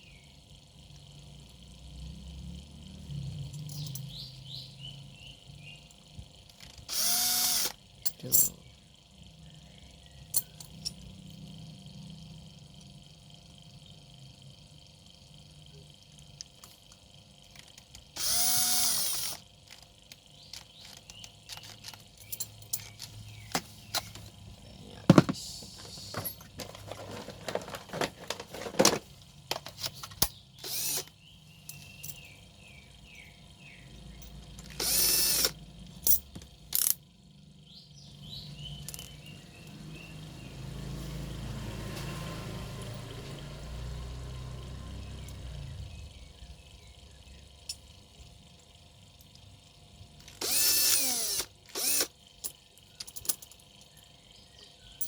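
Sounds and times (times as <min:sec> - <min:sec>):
tools and metal parts clicking: 0:03.4 - 0:04.2, 0:06.5 - 0:08.6, 0:10.3 - 0:11.2, 0:16.4 - 0:24.3, 0:25.1 - 0:32.4, 0:34.2 - 0:37.1, 0:38.8 - 0:39.3, 0:50.2 - 0:54.1
power tool motor running: 0:06.6 - 0:07.8, 0:17.6 - 0:19.8, 0:29.8 - 0:31.2, 0:34.4 - 0:35.8, 0:50.2 - 0:52.2.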